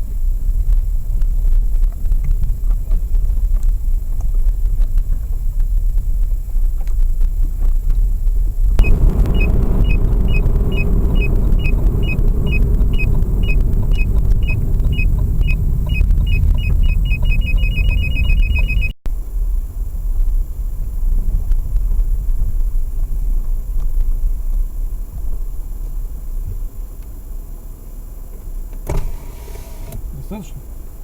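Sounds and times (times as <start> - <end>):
car engine rumbling: 0.0 - 31.0
parking sensor beeping: 8.8 - 19.0.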